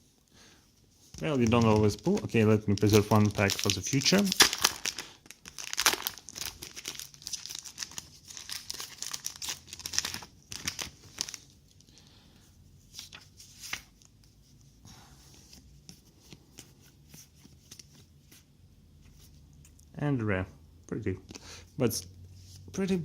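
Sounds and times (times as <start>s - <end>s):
cards clicking and rustling: 1.1s - 5.0s
wrapper tearing and crinkling: 1.2s - 12.0s.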